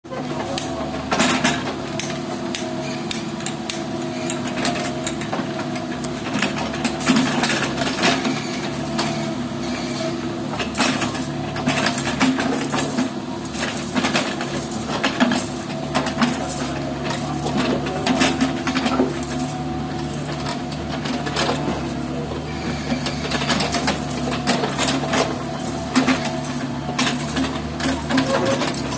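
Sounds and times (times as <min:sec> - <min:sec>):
excavator engine running: 0:00.1 - 0:28.9
metallic clanks from digging: 0:00.4 - 0:22.0, 0:22.7 - 0:28.9.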